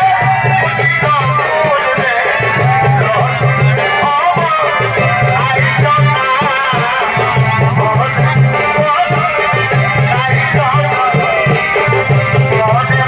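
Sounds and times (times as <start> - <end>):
drums: 0.0 - 13.0
high gliding melody: 6.9 - 9.2.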